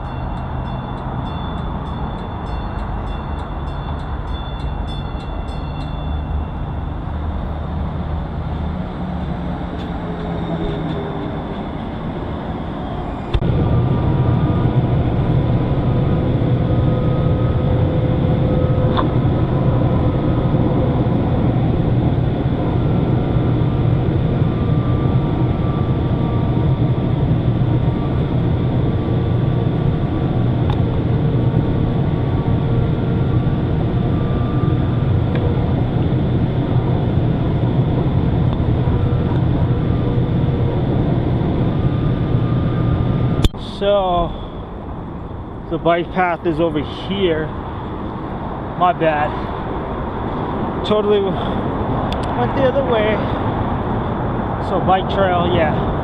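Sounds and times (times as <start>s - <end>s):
faint whine tones: 0.0s - 56.0s
train low rumble: 0.0s - 56.0s.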